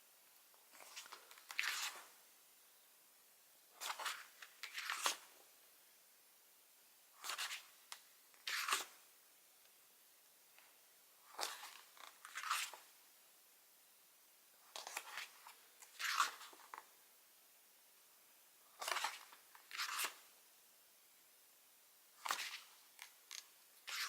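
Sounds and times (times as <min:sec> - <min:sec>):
paper pages turning: 0:00.7 - 0:02.2, 0:03.8 - 0:05.3, 0:07.2 - 0:09.0, 0:11.3 - 0:12.8, 0:14.8 - 0:16.8, 0:18.8 - 0:20.2, 0:22.2 - 0:24.0.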